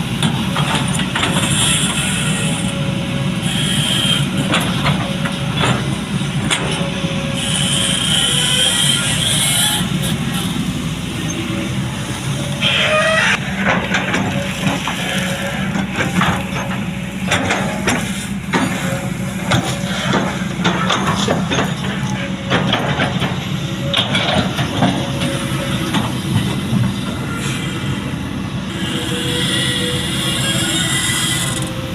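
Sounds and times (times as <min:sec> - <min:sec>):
excavator diesel engine running: 0:00.0 - 0:31.9
high squeal: 0:12.3 - 0:13.4, 0:27.1 - 0:31.9.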